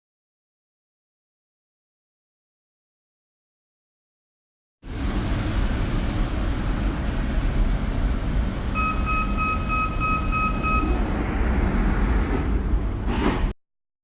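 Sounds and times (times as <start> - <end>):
train interior rumble: 4.9 - 13.6
door warning beeps: 8.8 - 11.0.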